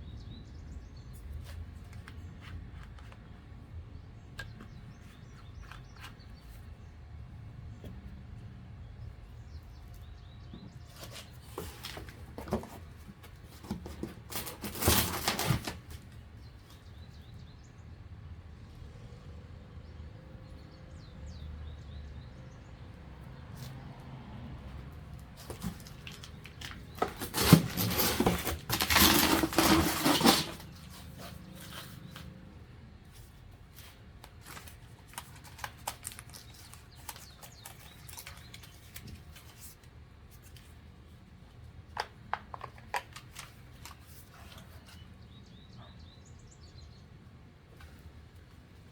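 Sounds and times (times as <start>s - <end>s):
packaging rustling: 10.9s - 16.0s, 25.4s - 32.4s, 33.8s - 39.8s.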